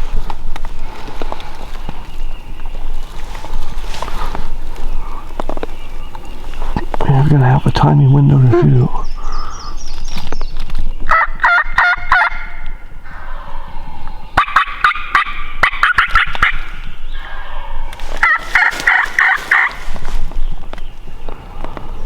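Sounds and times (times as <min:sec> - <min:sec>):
turkey gobbling: 0:11.1 - 0:13.6, 0:14.4 - 0:20.1.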